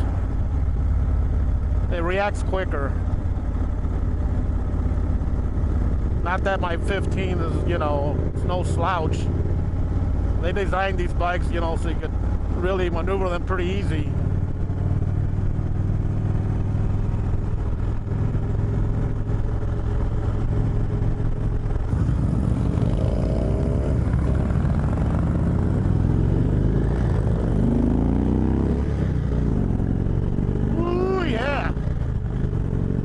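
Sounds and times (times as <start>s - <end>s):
motorcycle engine accelerating: 0.0s - 33.0s.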